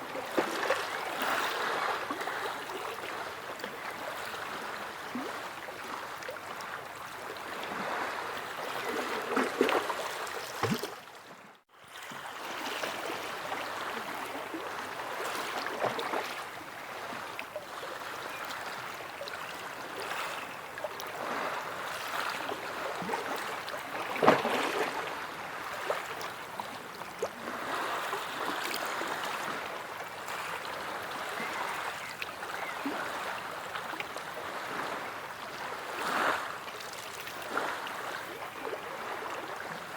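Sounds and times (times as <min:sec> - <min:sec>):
water splashes: 0:00.0 - 0:06.4, 0:07.4 - 0:11.2, 0:20.0 - 0:29.6.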